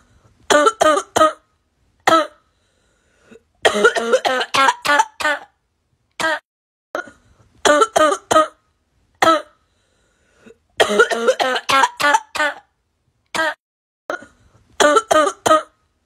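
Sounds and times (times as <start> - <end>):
person coughing: 2.1 - 2.4, 3.6 - 5.5, 6.2 - 6.4, 9.2 - 9.6, 10.8 - 12.7, 13.4 - 15.8.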